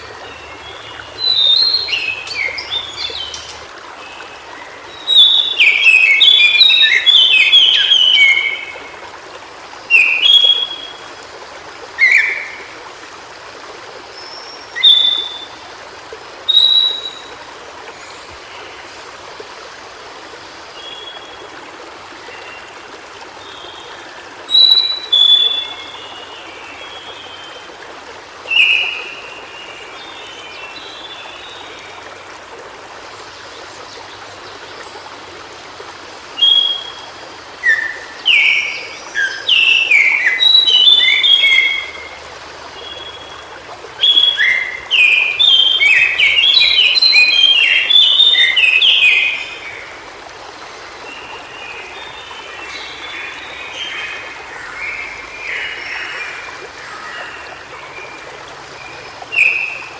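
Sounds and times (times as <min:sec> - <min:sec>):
bird singing: 0:00.0 - 0:03.6, 0:16.5 - 0:17.3, 0:44.0 - 0:49.7
running water rushing: 0:00.0 - 0:59.9.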